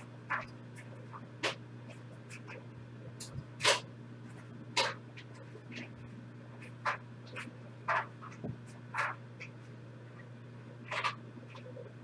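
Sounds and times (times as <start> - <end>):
low electrical hum: 0.0 - 12.0
trading cards swishing and scraping: 6.6 - 9.6.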